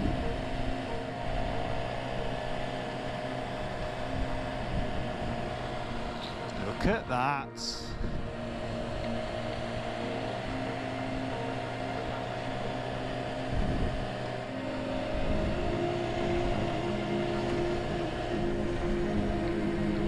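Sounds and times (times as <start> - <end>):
motorcycle engine running: 0.0 - 6.6, 8.0 - 20.0
wind rush: 7.9 - 8.9.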